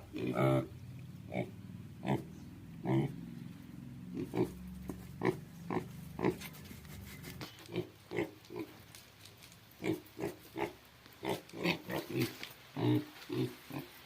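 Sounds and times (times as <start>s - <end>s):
piglets grunting: 0.0s - 3.4s, 4.0s - 6.5s.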